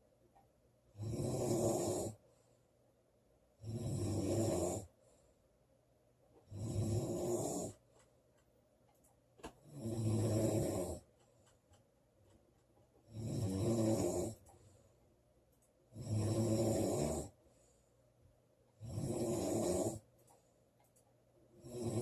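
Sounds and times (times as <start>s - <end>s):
woman snoring loudly: 1.0s - 2.2s, 3.6s - 4.9s, 6.5s - 7.8s, 9.6s - 11.0s, 13.1s - 14.4s, 16.0s - 17.4s, 18.8s - 20.0s, 21.6s - 22.0s.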